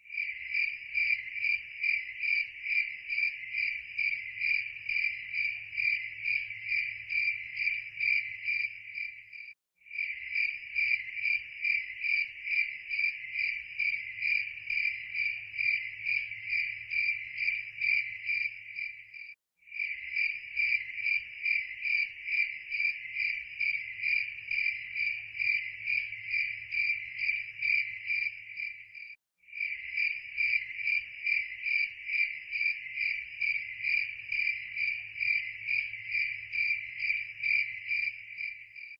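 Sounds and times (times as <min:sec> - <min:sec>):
crickets chirping: 0:00.1 - 0:38.9.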